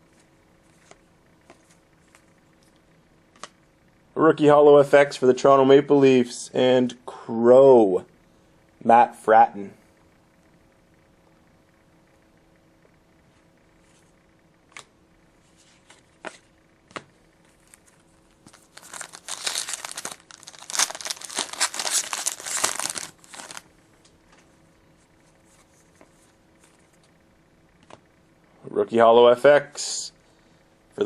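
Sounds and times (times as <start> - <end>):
foil wrapper crinkling and tearing: 17.6 - 23.7.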